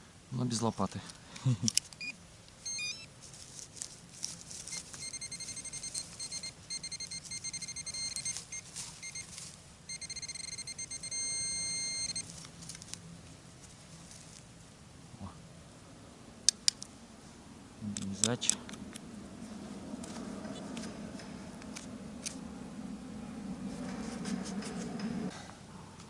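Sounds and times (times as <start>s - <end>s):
metal detector beeping: 2.0s - 3.1s, 4.7s - 12.3s
light clicks and rustles: 3.2s - 7.4s, 12.2s - 14.5s.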